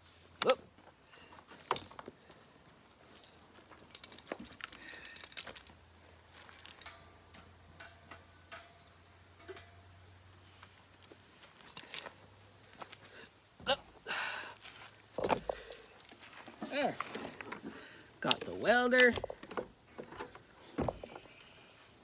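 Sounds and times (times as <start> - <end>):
small objects clicking and clattering: 3.1 - 7.1.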